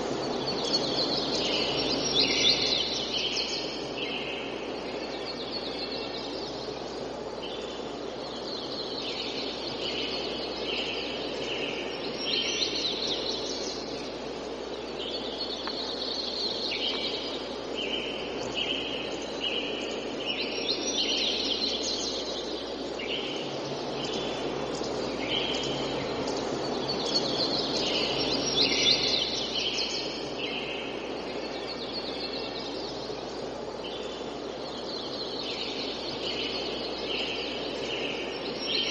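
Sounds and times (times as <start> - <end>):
birds calling: 0.0 - 38.9
wind in trees: 0.0 - 38.9.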